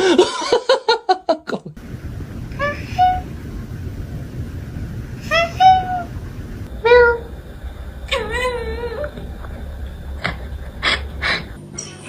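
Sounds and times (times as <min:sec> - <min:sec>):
low steady rumble: 0:01.8 - 0:11.8
cat meowing: 0:06.8 - 0:07.3, 0:08.0 - 0:09.3
cat yowling: 0:06.8 - 0:07.3, 0:08.0 - 0:09.6.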